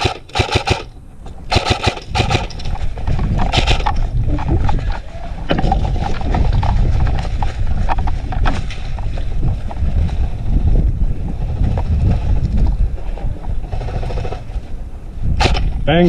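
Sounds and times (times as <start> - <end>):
camera handling rumble: 0.0 - 10.4
wind on microphone: 0.0 - 16.0.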